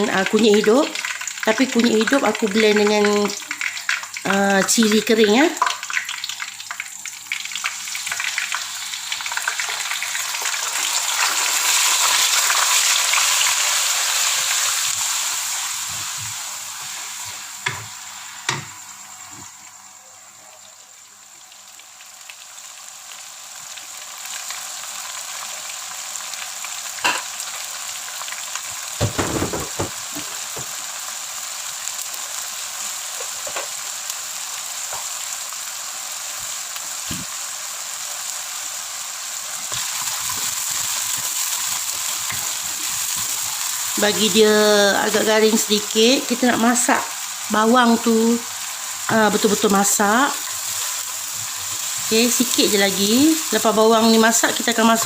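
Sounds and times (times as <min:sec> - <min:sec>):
food sizzling in oil: 0:00.0 - 0:55.0.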